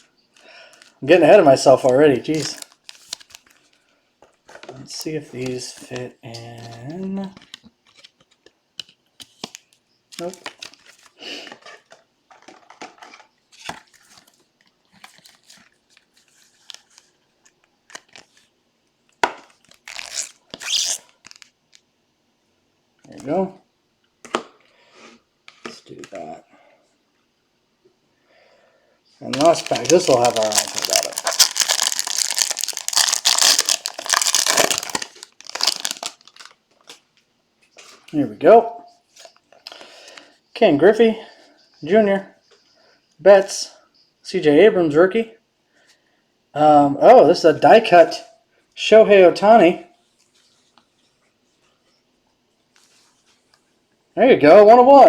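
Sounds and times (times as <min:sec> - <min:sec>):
trading cards rustling: 0:00.7 - 0:18.5, 0:19.4 - 0:21.5, 0:29.2 - 0:37.0
wrapper being torn and crumpled: 0:01.7 - 0:03.5, 0:19.6 - 0:21.5, 0:29.3 - 0:36.6.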